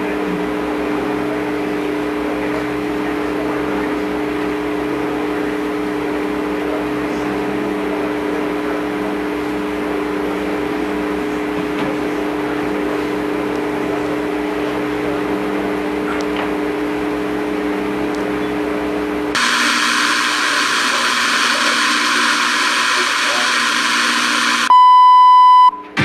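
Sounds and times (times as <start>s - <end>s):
steady hum: 19.0s - 24.8s.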